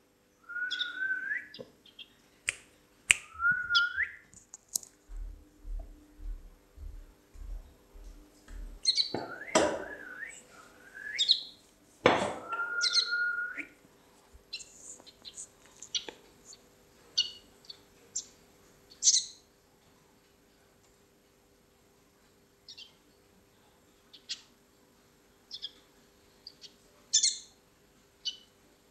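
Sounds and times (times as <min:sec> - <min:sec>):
small bird chirping: 0:00.7 - 0:02.2, 0:07.4 - 0:10.2, 0:11.2 - 0:11.6, 0:12.6 - 0:13.6, 0:14.5 - 0:16.6, 0:17.2 - 0:19.4, 0:22.7 - 0:23.0, 0:24.1 - 0:24.5, 0:25.5 - 0:27.5, 0:28.2 - 0:28.5.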